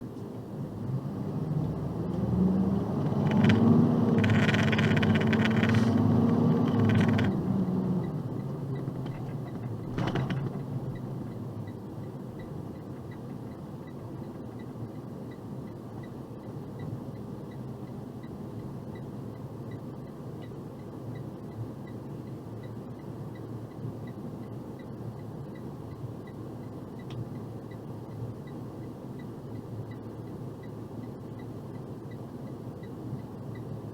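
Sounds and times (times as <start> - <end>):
road noise: 0.1 - 15.6
truck engine: 0.9 - 11.7.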